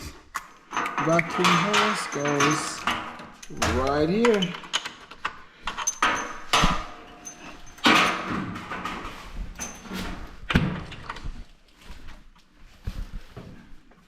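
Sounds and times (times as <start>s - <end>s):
rustling and scraping: 0.0s - 14.0s
hose clunks and knocks: 0.7s - 4.7s, 5.8s - 11.3s.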